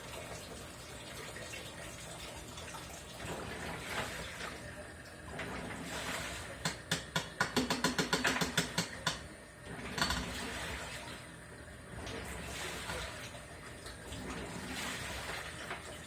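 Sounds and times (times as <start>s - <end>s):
washing machine clicking: 5.2s - 11.1s.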